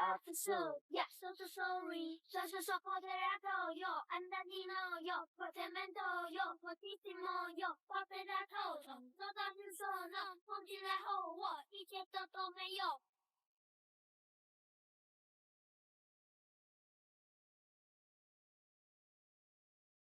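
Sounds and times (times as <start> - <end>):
high child-like voice singing pop song: 0.0 - 13.0.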